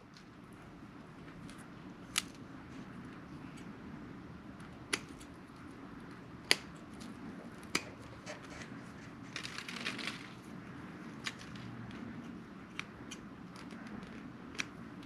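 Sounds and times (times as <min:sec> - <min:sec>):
scissors snipping wire: 0:04.6 - 0:05.3, 0:06.4 - 0:10.0.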